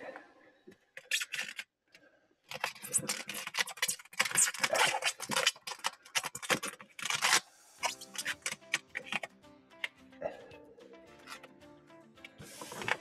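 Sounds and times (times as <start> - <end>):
background music: 7.2 - 13.0.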